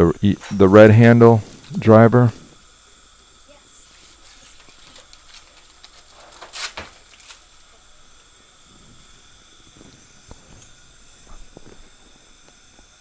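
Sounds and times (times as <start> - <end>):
dental equipment hissing: 0.0 - 13.0.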